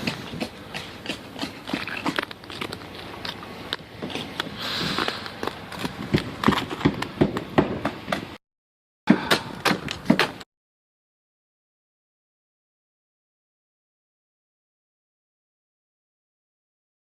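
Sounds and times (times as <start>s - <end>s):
ice being chipped: 0.0s - 6.8s
scraping hiss: 4.5s - 5.4s.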